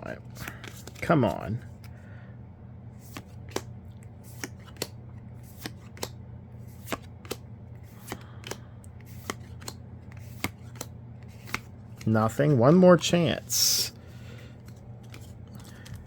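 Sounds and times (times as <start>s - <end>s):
cards flicking: 3.0s - 12.1s.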